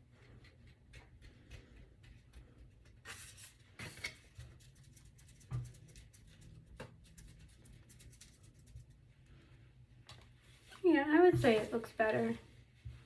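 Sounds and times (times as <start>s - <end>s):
rubbing noises: 10.4s - 13.0s.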